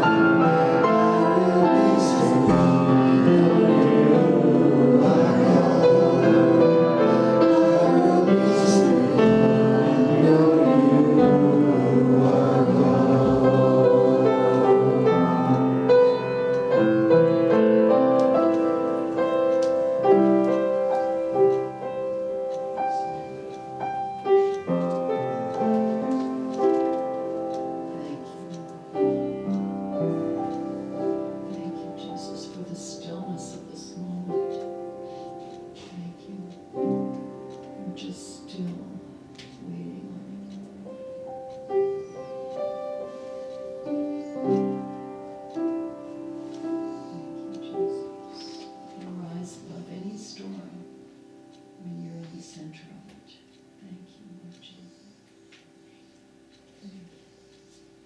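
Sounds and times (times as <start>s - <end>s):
piano and keyboard: 0.0s - 58.0s
voices singing worship music: 0.0s - 58.0s.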